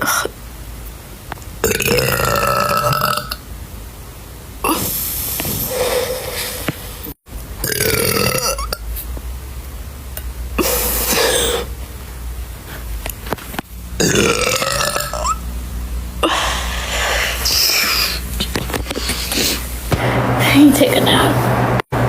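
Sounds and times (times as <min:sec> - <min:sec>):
steady low hum: 0:00.0 - 0:22.0
woman burping: 0:04.6 - 0:04.9, 0:07.6 - 0:08.8, 0:10.6 - 0:11.7, 0:14.0 - 0:15.4.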